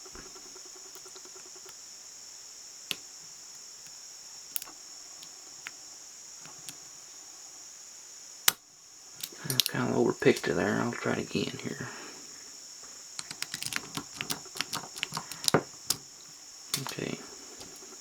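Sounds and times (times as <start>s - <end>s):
lock pick clicks: 13.2s - 16.0s.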